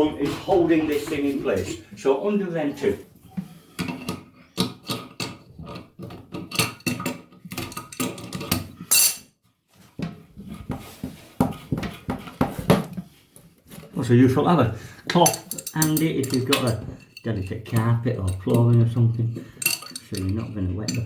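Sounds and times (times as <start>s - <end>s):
spanner clinking on metal nuts: 6.4s - 9.3s, 15.1s - 21.0s.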